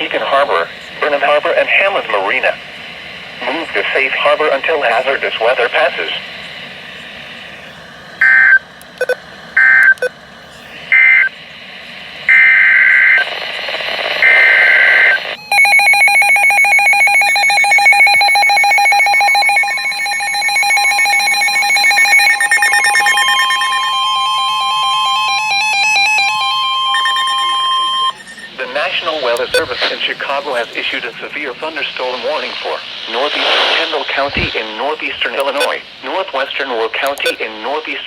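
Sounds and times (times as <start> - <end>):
pulsing alarm beeps: 8.2 - 10.1, 10.9 - 11.4, 14.2 - 31.0, 35.4 - 35.8
steady warning alarm tone: 8.2 - 10.1, 10.9 - 11.4, 14.2 - 34.5, 35.1 - 36.2
warbling digital data bursts: 15.4 - 35.8.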